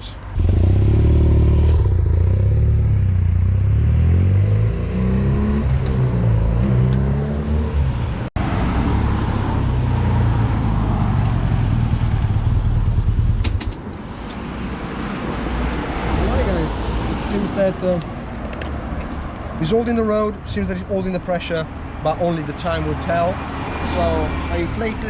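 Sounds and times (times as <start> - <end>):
motorcycle engine revving: 0.3 - 7.9.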